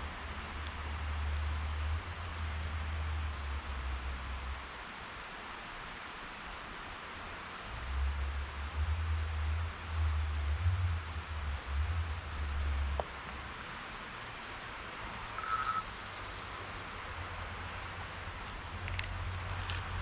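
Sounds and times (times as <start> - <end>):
wind rumble on microphone: 7.7 - 13.5.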